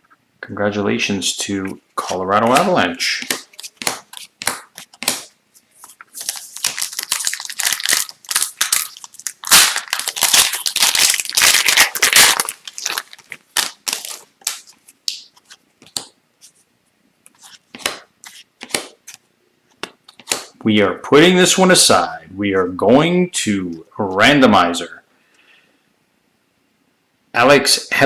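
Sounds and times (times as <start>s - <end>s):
cards clicking and tapping: 2.4s - 7.0s, 13.2s - 16.2s, 17.3s - 20.6s
foil wrapper tearing and crinkling: 6.1s - 14.8s.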